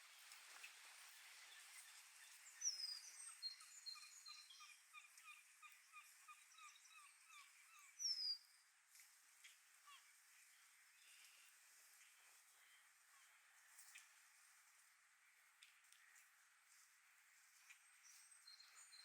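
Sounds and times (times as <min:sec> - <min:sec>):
faint bird chirping: 0:00.1 - 0:08.7, 0:17.4 - 0:19.0.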